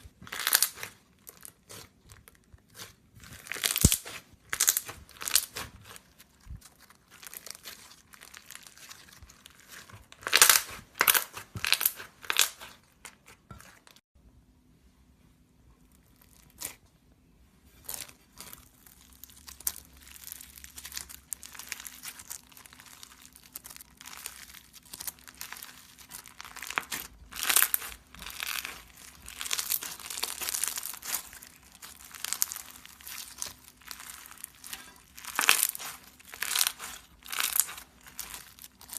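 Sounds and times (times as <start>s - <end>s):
crunchy slime crackling: 0.0s - 14.0s, 15.8s - 16.9s, 17.7s - 38.9s.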